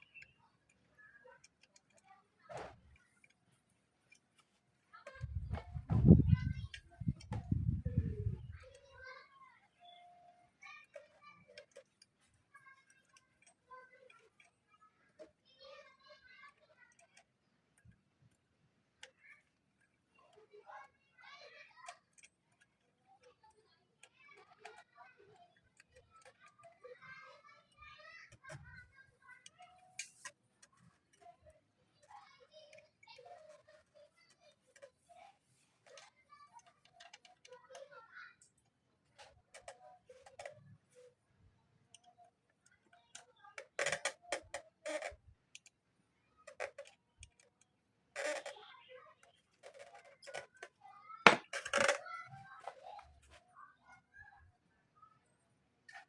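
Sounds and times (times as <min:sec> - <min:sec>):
light clicks and taps: 0:00.0 - 0:41.2, 0:41.9 - 0:45.8.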